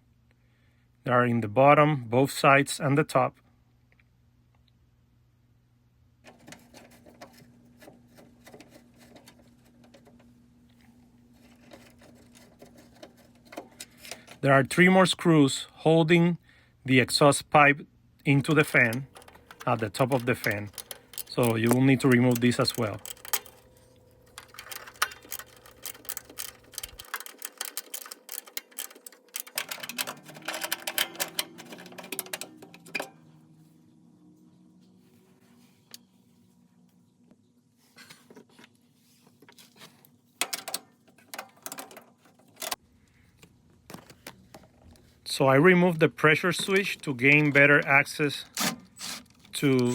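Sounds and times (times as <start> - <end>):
screws rattling on sheet metal: 18.5 - 33.1, 48.5 - 49.9
power screwdriver running: 48.6 - 49.4.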